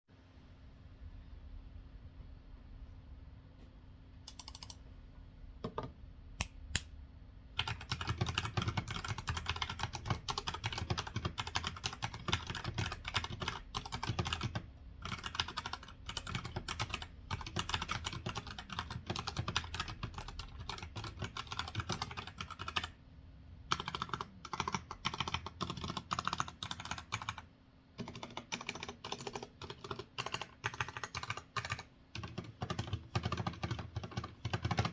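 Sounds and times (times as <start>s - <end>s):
mechanical keyboard typing: 4.3s - 4.8s, 7.6s - 22.9s, 23.7s - 34.9s.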